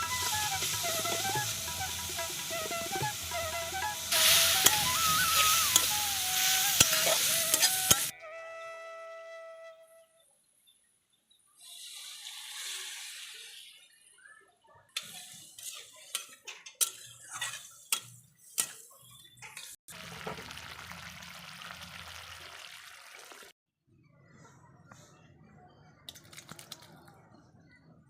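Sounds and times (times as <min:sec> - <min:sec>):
cooking hiss: 0:00.0 - 0:08.2, 0:11.6 - 0:14.2
metal utensil clinking on pot: 0:15.0 - 0:19.8.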